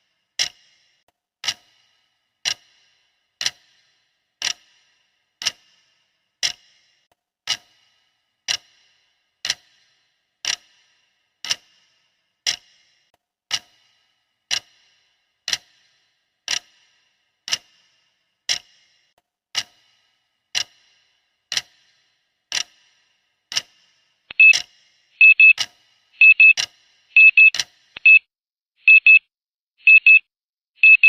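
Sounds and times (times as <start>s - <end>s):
clock ticking: 0.0s - 28.2s
electronic alarm beeping: 24.3s - 24.6s, 25.2s - 25.6s, 26.2s - 26.6s, 27.2s - 29.2s, 29.8s - 30.2s.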